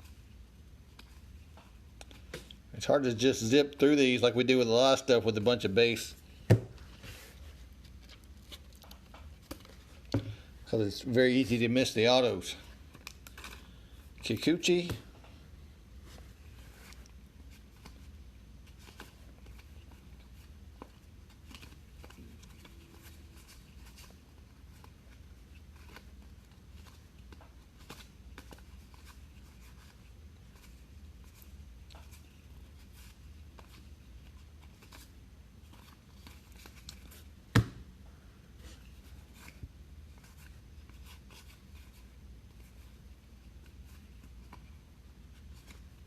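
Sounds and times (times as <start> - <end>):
low steady hum: 0.0 - 46.0
trading cards clicking and rustling: 11.1 - 15.3, 16.5 - 37.8.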